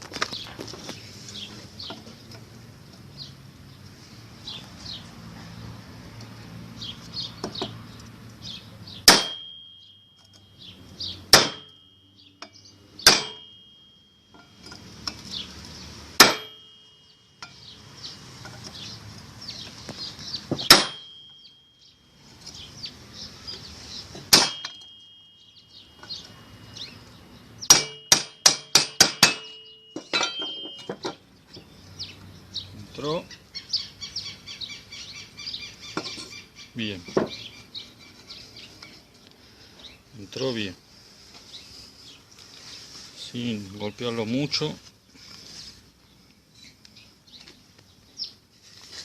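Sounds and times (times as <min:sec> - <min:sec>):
hammer blows ringing on metal: 0:09.0 - 0:14.6, 0:16.2 - 0:17.7, 0:20.5 - 0:21.7, 0:24.3 - 0:26.2, 0:27.6 - 0:31.1.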